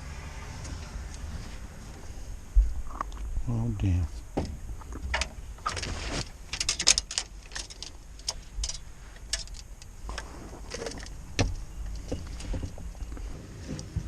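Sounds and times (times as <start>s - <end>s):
small hard objects clicking: 6.5s - 10.2s.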